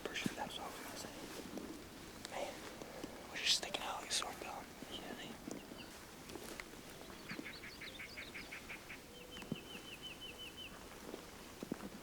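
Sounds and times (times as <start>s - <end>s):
small birds singing: 2.4s - 6.1s, 6.7s - 10.9s.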